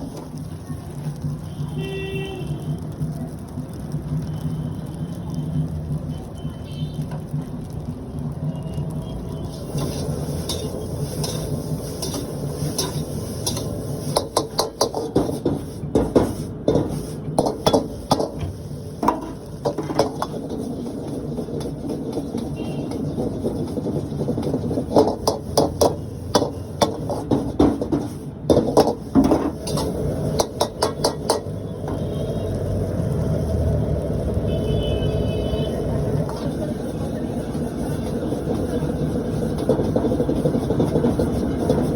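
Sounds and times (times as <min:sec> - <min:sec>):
metal spatula clanging on wok: 0:09.6 - 0:32.0.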